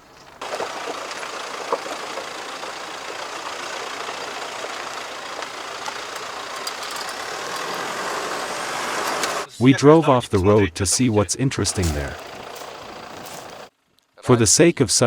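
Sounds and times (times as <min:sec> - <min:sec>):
vehicle tyre and engine noise: 0:00.0 - 0:09.5, 0:11.7 - 0:13.8.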